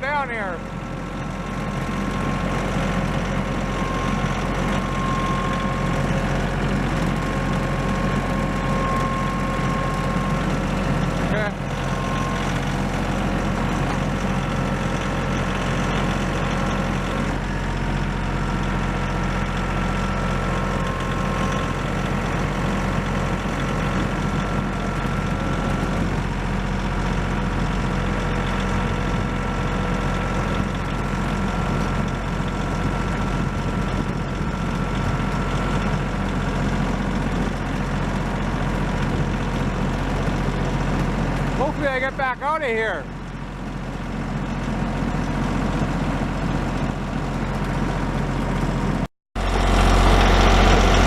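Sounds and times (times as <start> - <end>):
tractor diesel engine running: 0.0 - 51.0.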